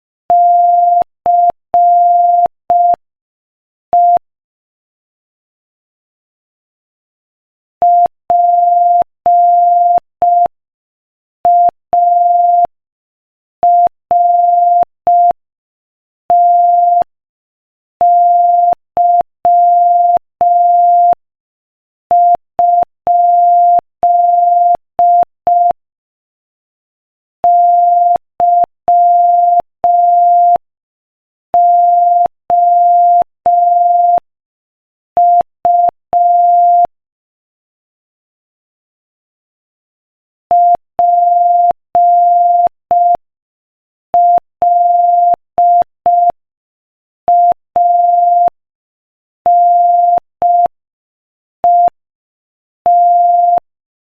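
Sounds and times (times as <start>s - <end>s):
morse code beeps: 11.5s - 12.7s, 18.0s - 21.2s, 22.1s - 25.8s, 27.4s - 30.6s, 31.6s - 34.2s, 35.2s - 36.9s, 40.5s - 43.2s, 44.2s - 46.4s, 47.3s - 48.6s, 49.5s - 50.8s, 51.6s - 52.0s, 52.9s - 53.7s.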